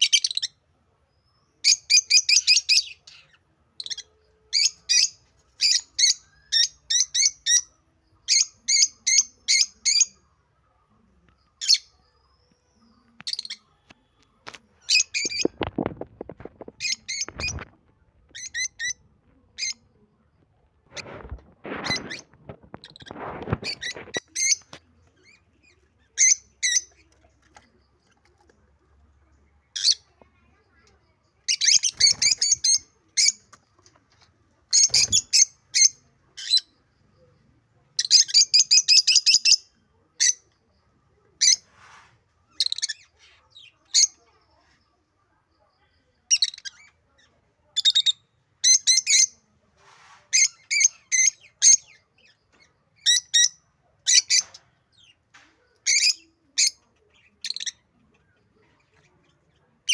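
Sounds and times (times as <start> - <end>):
lovebirds shrill chirping: 1.4 - 10.2, 14.8 - 15.7, 16.7 - 19.0, 21.2 - 27.1, 31.5 - 33.5, 34.7 - 36.8, 50.3 - 52.3, 55.9 - 57.9.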